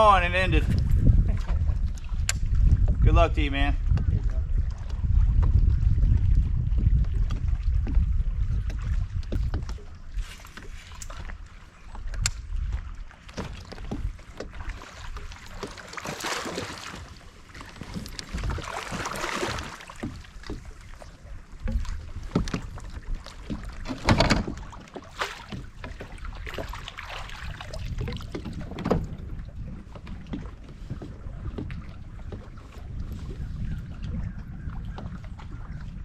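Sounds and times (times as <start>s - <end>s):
kayak water and handling noise: 0.0s - 36.0s
low wind rumble on microphone: 0.0s - 36.0s.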